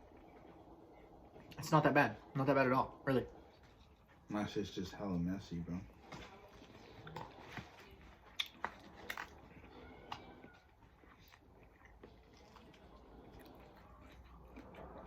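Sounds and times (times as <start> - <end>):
person chewing food: 3.3 - 15.0.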